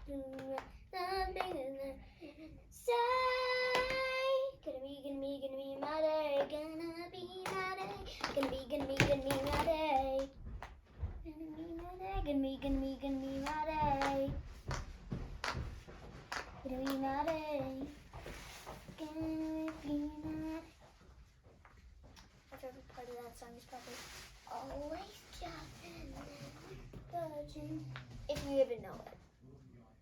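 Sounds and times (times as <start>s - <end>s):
girl singing: 0.0s - 14.8s, 16.5s - 20.9s, 22.5s - 29.2s
toys clicking and tapping: 7.4s - 10.8s.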